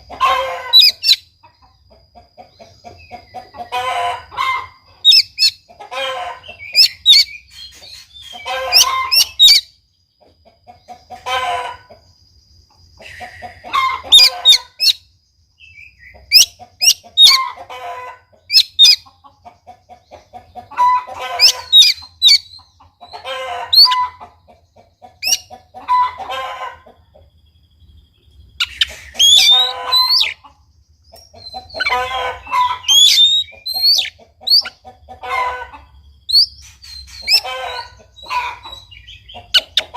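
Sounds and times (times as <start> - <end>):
bird singing whistles and chatter: 28.5 - 30.4, 32.8 - 34.8.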